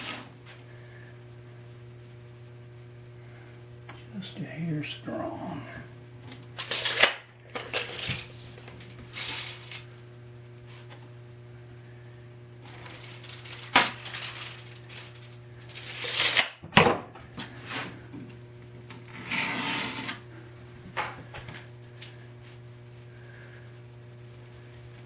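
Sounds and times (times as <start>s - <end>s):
rustling and scraping: 0.0s - 0.6s, 7.6s - 10.0s, 10.6s - 11.1s, 12.6s - 16.4s, 17.4s - 18.0s
steady low hum: 0.0s - 16.4s, 17.2s - 25.0s.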